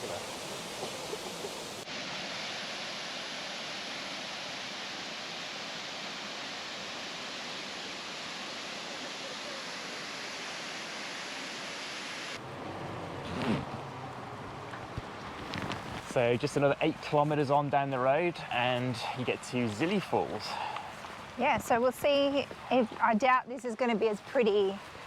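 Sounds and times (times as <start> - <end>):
heavy rain: 0.0 - 3.4
waterfall rushing into pool: 0.0 - 12.4.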